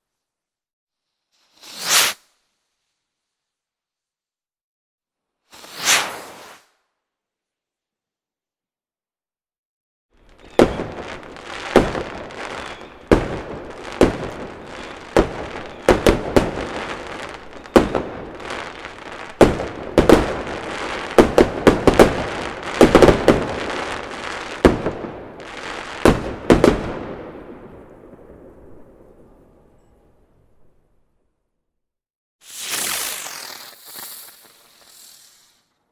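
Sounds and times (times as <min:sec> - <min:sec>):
fireworks crackling: 0:10.2 - 0:29.6, 0:32.4 - 0:35.8
fireworks bangs: 0:10.2 - 0:30.8, 0:32.4 - 0:35.6.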